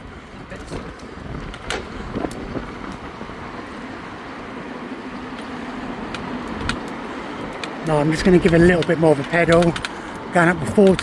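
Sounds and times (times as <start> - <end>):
road rumble: 0.0 - 11.0
wind noise while riding: 0.0 - 11.0
light clicks: 6.1 - 11.0.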